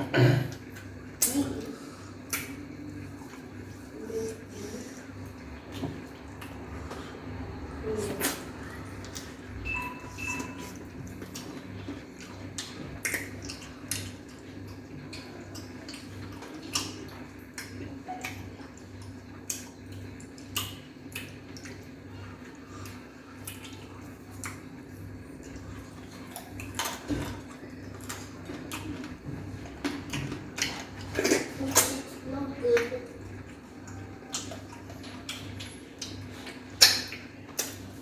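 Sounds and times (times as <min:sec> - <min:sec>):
steady low hum: 0:00.0 - 0:38.0
mouth clicks and smacks: 0:12.5 - 0:14.4, 0:34.3 - 0:37.9.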